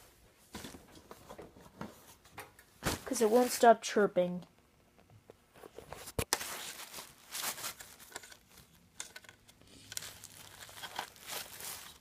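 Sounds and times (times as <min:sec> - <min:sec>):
rustling handling noise: 0:00.5 - 0:03.8, 0:05.4 - 0:12.0.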